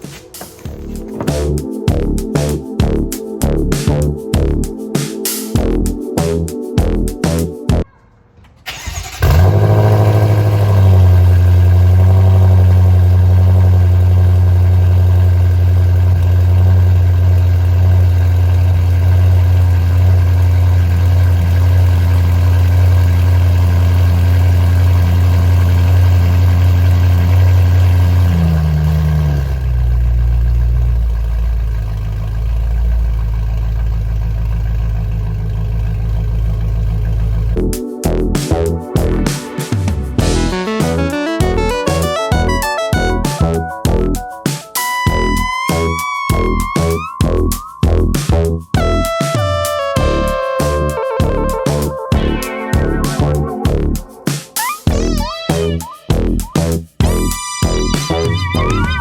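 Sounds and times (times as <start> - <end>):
car engine idling: 0.0 - 3.2, 8.7 - 40.7.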